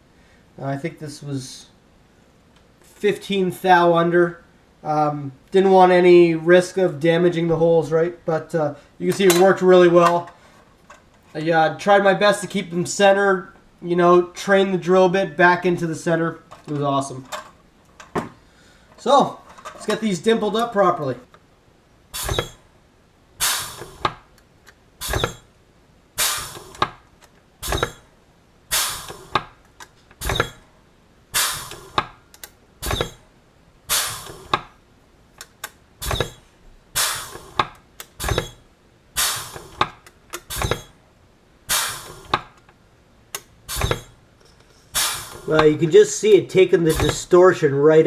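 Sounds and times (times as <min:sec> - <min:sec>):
pneumatic rivet squeezer bursts: 0:22.1 - 0:22.7, 0:23.4 - 0:24.4, 0:25.0 - 0:25.6, 0:26.2 - 0:33.3, 0:33.9 - 0:34.8, 0:35.4 - 0:41.0, 0:41.7 - 0:42.7, 0:43.3 - 0:45.8, 0:46.9 - 0:47.3.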